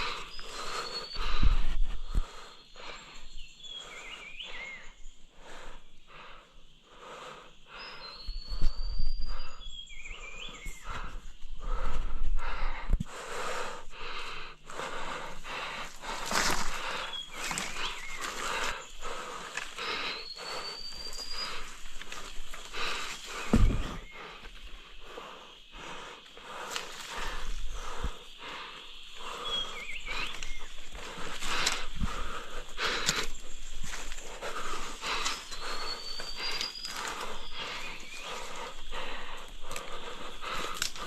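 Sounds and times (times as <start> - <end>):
heavy thump: 23.5 - 24.0.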